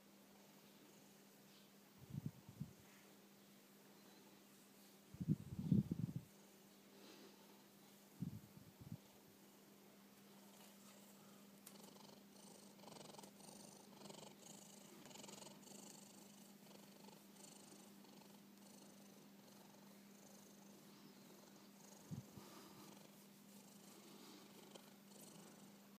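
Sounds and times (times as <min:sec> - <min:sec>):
low steady hum: 0:00.0 - 0:26.0
cat snoring: 0:11.7 - 0:26.0.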